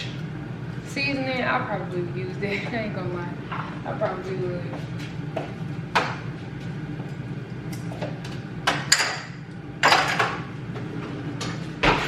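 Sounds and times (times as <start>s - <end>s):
air fryer hum: 0.0s - 12.0s
dishes clinking: 8.7s - 10.4s.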